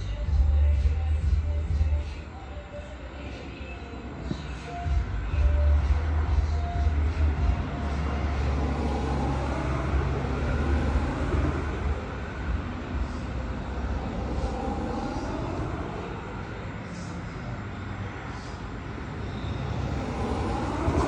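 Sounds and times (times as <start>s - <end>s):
highway traffic: 0.0s - 21.0s
heavy low rumble: 4.8s - 21.0s.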